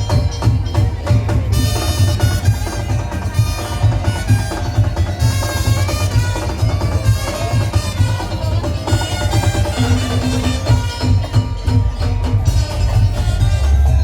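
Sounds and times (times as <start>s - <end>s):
heavy pulsing bass beat: 0.0s - 14.0s
loud lively band music: 0.0s - 14.0s.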